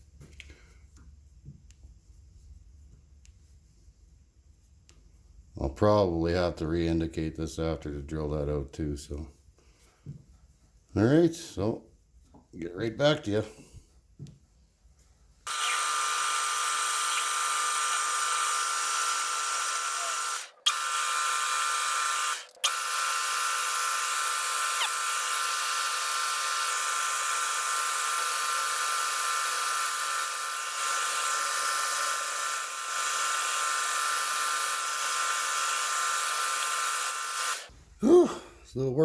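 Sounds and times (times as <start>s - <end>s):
metal lathe whining: 15.5s - 37.7s.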